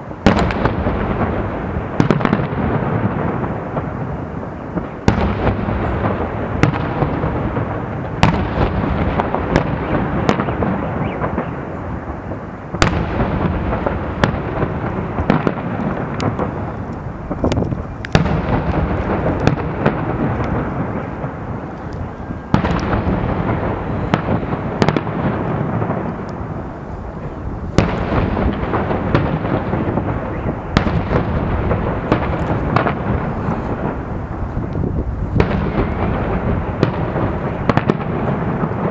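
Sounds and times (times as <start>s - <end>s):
firework bangs: 0.0s - 38.9s
low rumble of firework bursts: 0.0s - 38.9s.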